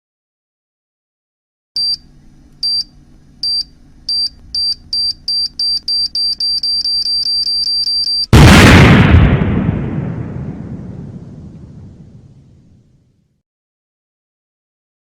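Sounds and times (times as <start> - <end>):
accelerating electronic beep: 2.6 - 8.3
loud explosion: 8.3 - 13.1.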